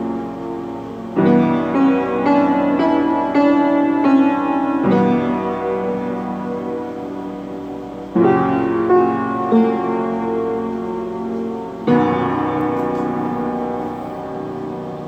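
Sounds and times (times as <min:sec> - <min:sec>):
slow solo piano chords: 0:00.0 - 0:15.0.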